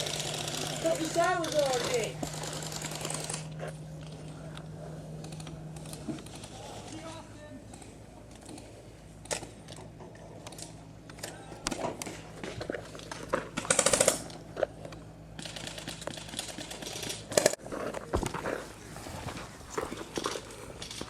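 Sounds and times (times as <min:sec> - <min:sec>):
rapid automatic fire: 0:13.6 - 0:14.4.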